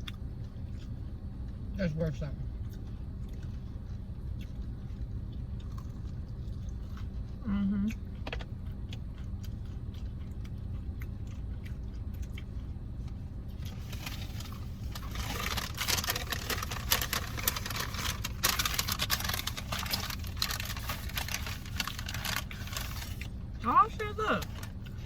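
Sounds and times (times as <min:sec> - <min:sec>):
steady low hum: 0:00.0 - 0:25.0
fast-food packaging crinkling: 0:13.6 - 0:23.3.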